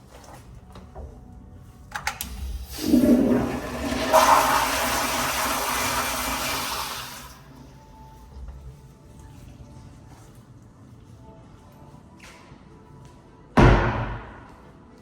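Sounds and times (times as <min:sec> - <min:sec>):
toilet flush clicks: 0:02.2 - 0:07.4
rush of flushing water: 0:02.5 - 0:07.5.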